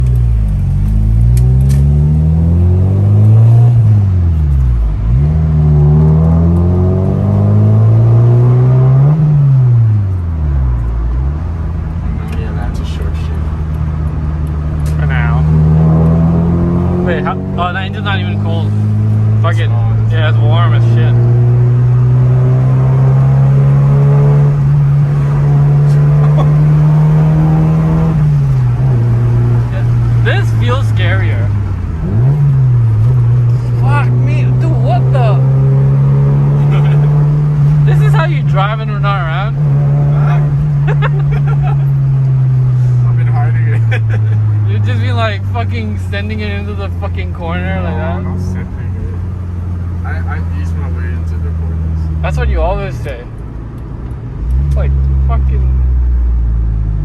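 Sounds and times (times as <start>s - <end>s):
car engine accelerating: 0.0s - 57.0s.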